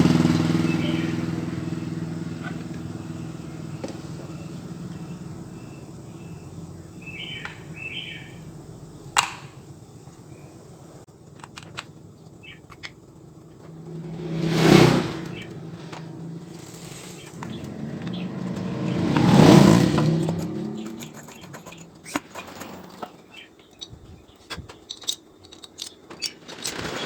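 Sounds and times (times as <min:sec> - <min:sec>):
birds chirping: 0:00.0 - 0:26.8
loud whoosh: 0:13.8 - 0:20.6.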